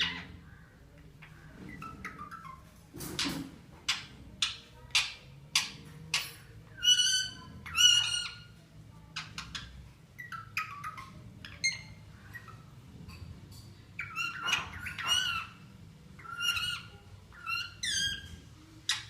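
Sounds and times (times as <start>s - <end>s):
bird squawking: 0.0s - 2.7s.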